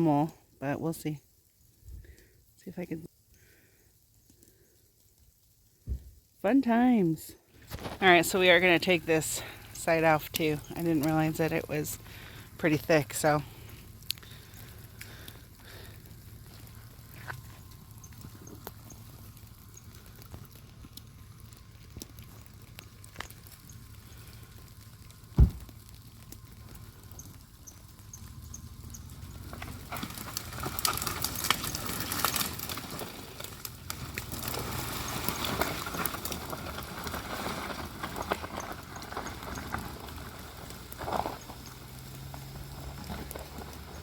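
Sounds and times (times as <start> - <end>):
twigs and branches crackling: 0.0 - 44.0
heavy thump: 25.3 - 25.7
branches snapping: 28.8 - 40.0.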